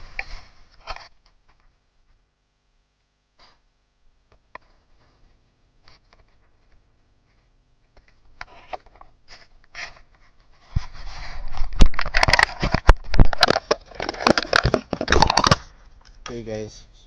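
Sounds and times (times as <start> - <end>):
plastic and wires rustling: 0.0 - 2.2, 4.5 - 16.5
sharp clicks and knocks: 11.7 - 16.4.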